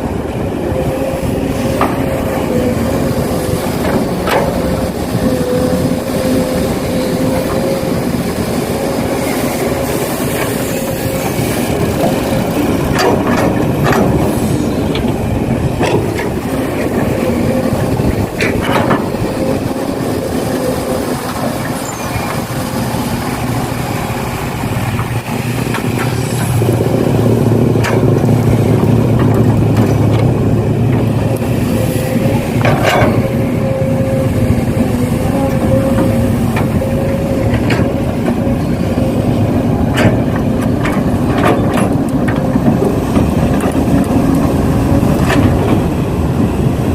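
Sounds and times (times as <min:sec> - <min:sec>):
sharp clicks and knocks: 0:03.7 - 0:04.9, 0:12.0 - 0:17.2, 0:27.7 - 0:31.5, 0:39.9 - 0:45.9.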